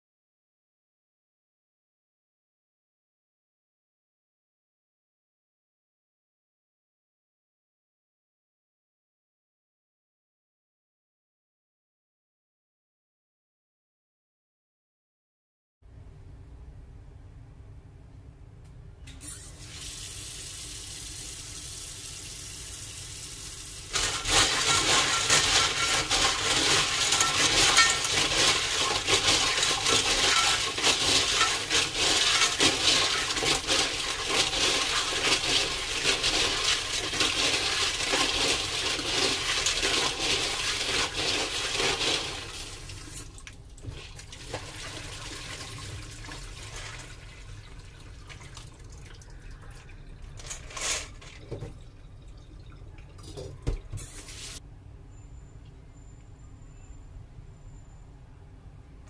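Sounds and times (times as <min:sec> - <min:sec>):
tap water running into sink: 0:19.4 - 0:49.2.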